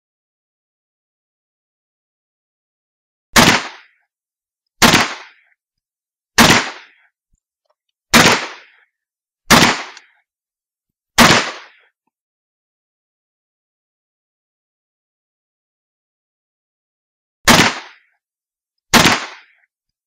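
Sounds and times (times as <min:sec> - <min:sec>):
gunshots: 0:03.4 - 0:04.0, 0:04.8 - 0:05.5, 0:06.4 - 0:07.0, 0:08.1 - 0:08.8, 0:09.5 - 0:10.1, 0:11.2 - 0:11.8, 0:17.5 - 0:18.0, 0:18.9 - 0:19.6.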